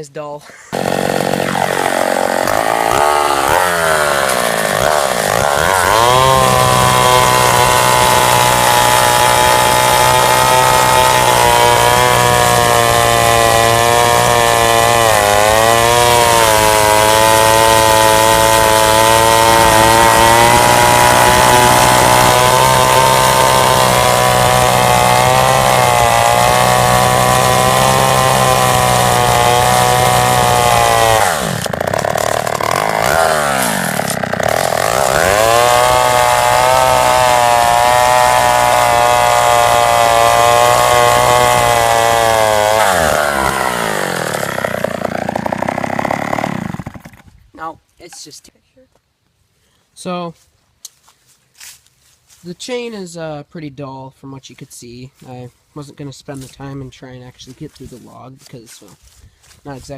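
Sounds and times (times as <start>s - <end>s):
chainsaw cutting log: 0.6s - 47.4s
chainsaw revving: 0.7s - 47.3s.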